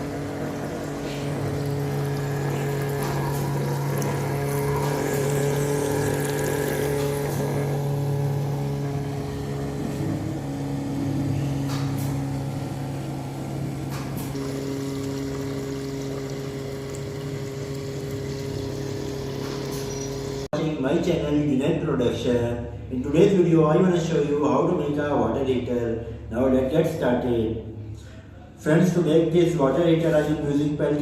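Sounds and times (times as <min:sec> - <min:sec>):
water pump humming: 0:00.0 - 0:20.5.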